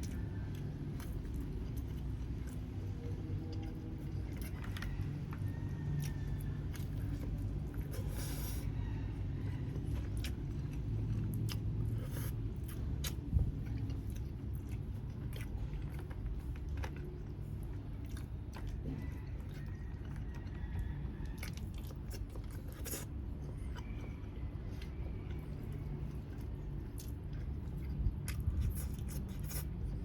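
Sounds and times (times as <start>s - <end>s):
chewing and biting: 0.0s - 30.0s.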